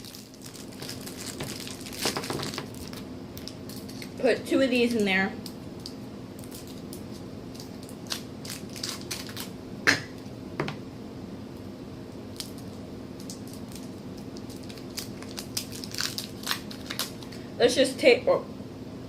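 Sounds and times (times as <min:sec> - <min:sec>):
candy wrapper clicks and crinkles: 0:00.0 - 0:04.2, 0:05.0 - 0:09.5, 0:12.3 - 0:17.4
faint steady hum: 0:00.0 - 0:19.0.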